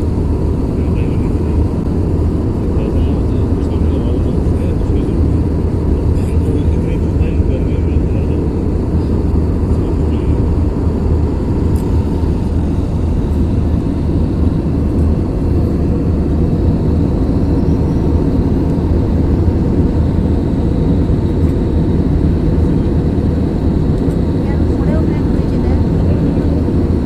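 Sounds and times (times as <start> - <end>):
faint steady whine: 0.0 - 27.0
jet engine hum: 0.0 - 27.0.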